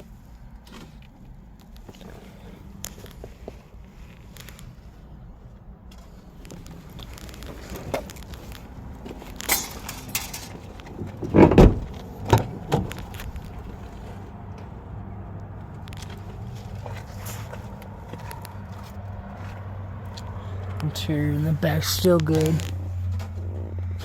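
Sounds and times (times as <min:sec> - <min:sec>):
clicks and rattles: 0:09.2 - 0:13.6
heavy thump: 0:11.2 - 0:12.9.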